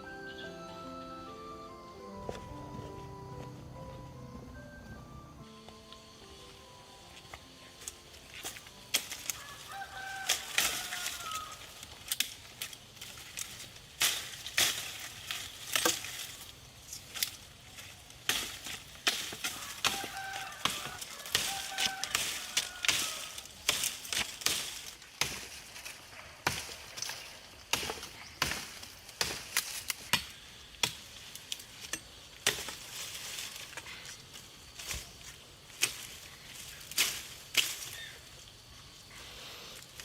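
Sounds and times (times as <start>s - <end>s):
hand tool chopping hard material: 10.2s - 16.4s, 18.2s - 31.1s, 31.8s - 33.0s.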